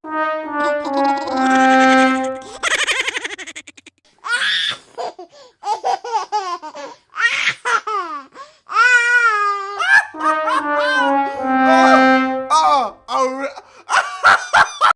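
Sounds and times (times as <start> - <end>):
high-pitched laughter: 0.6 - 4.0, 9.7 - 11.1.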